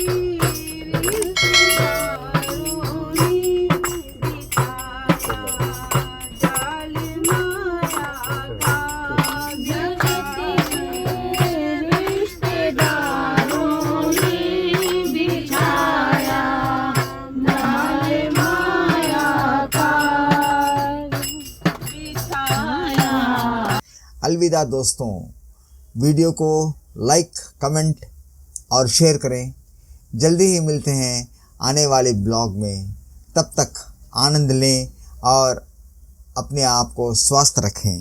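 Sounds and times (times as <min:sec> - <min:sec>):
devotional singing: 0:00.0 - 0:23.8
jingling hand percussion: 0:00.0 - 0:23.8.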